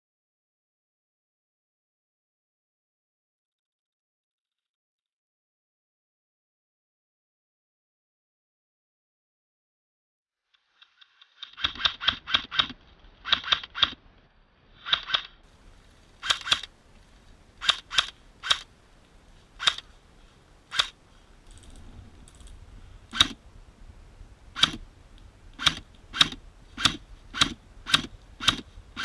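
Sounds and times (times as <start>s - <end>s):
airsoft guns firing: 16.2s - 16.7s, 17.6s - 18.7s, 19.6s - 20.0s, 20.7s - 21.0s, 23.1s - 23.4s, 24.5s - 24.8s, 25.6s - 29.0s.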